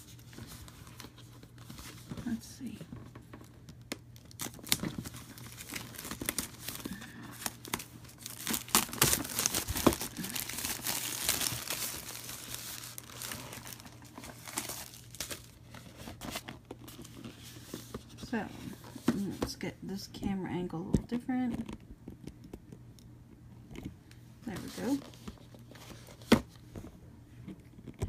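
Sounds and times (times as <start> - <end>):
plastic shrink-wrap crinkling: 3.3 - 17.5.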